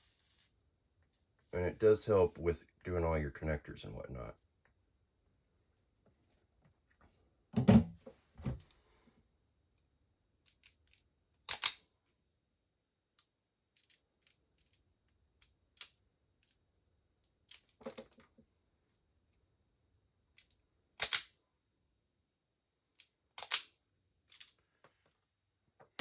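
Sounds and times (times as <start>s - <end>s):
tools knocking on workbench: 7.6s - 8.0s.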